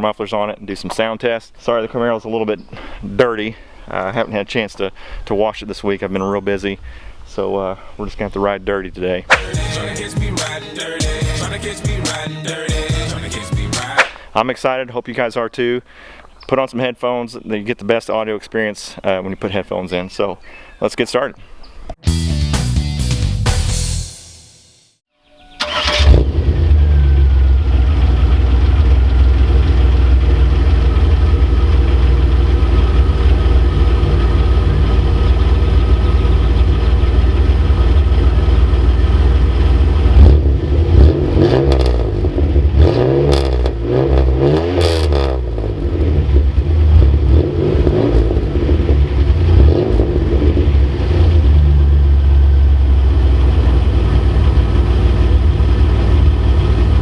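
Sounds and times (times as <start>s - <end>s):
car engine idling and revving: 25.6s - 57.0s.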